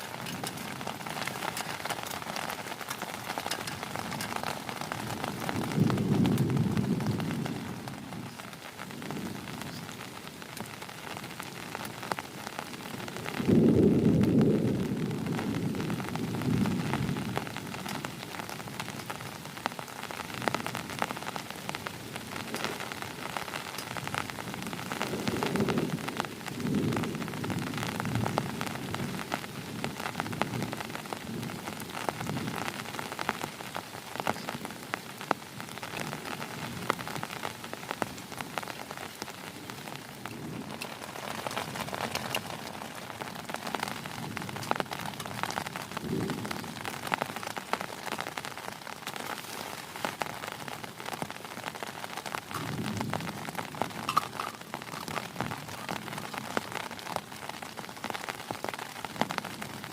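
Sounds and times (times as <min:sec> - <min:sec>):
low rolls of thunder: 0:00.0 - 0:09.8, 0:12.9 - 0:18.8, 0:24.0 - 0:33.2, 0:39.5 - 0:47.6, 0:52.5 - 0:57.3
heavy rain falling: 0:00.0 - 0:59.9.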